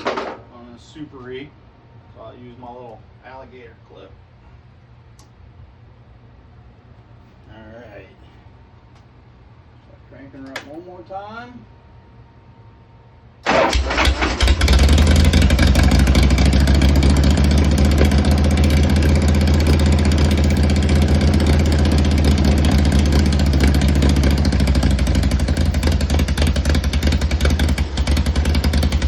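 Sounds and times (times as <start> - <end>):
motorcycle engine starting and idling: 13.4 - 29.0.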